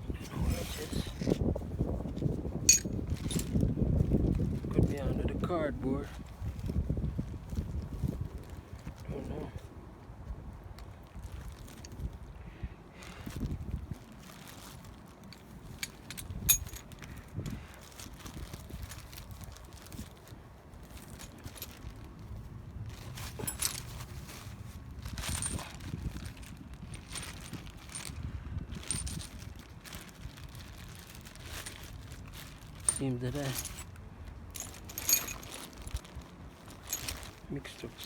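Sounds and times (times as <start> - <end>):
metal hand tools clinking: 2.7 - 3.5, 15.8 - 16.9, 23.2 - 24.0, 34.6 - 35.9.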